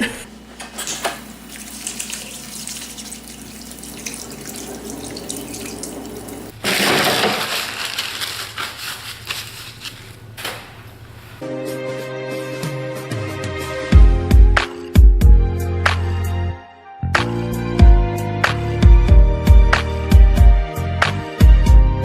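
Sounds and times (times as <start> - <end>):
water running from sink tap: 0.8 - 6.6.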